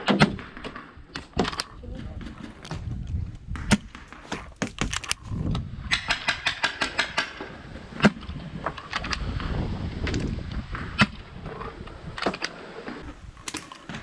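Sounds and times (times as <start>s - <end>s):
paintball markers firing: 0.0s - 9.3s, 12.2s - 14.0s.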